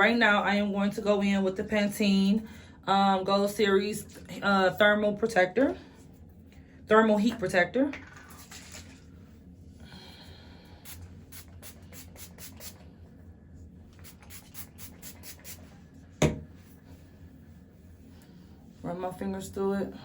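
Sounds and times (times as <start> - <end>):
pump spray bottle spritzing: 10.9 - 12.8, 14.0 - 15.6
sharp knock: 16.2 - 16.5.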